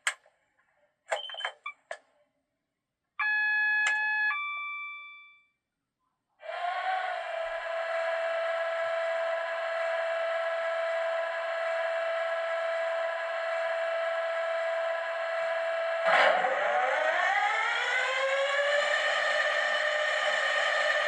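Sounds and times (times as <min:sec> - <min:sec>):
model locomotive engine drone: 0:06.4 - 0:21.0.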